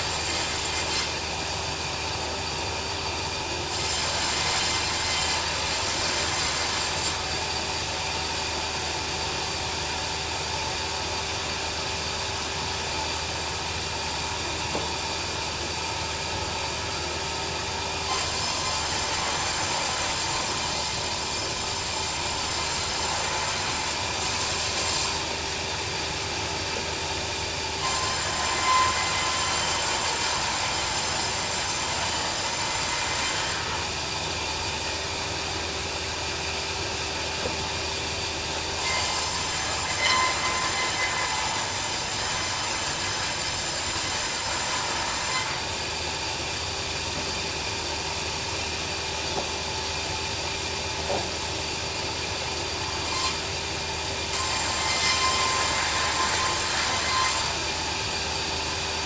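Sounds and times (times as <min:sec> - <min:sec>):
band saw cutting log: 0:00.0 - 0:08.5, 0:17.6 - 0:46.4, 0:50.7 - 0:59.0.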